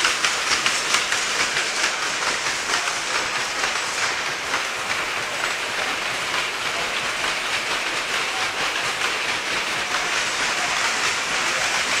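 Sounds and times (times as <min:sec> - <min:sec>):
loom mechanical clatter: 0:00.0 - 0:12.0.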